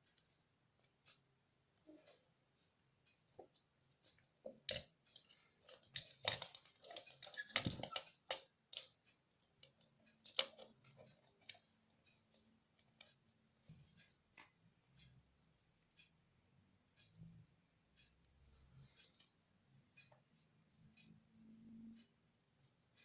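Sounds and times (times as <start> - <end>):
clicks of wires being handled: 4.1 - 8.9.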